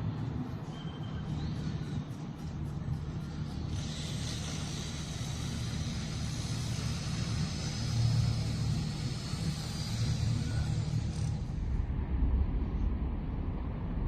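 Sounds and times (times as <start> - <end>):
low engine rumble: 0.0 - 14.0.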